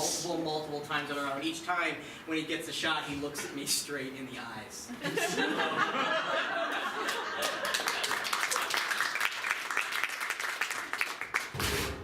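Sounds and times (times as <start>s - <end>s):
audience applauding: 6.8s - 11.6s.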